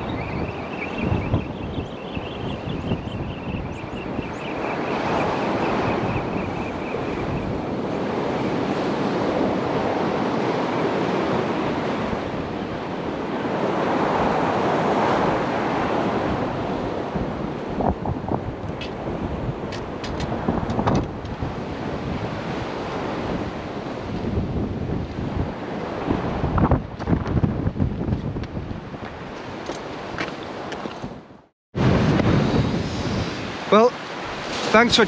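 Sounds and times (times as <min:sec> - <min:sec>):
wind buffeting microphone: 0:00.0 - 0:35.0
sea waves washing onto shore: 0:04.6 - 0:26.6, 0:31.8 - 0:35.0.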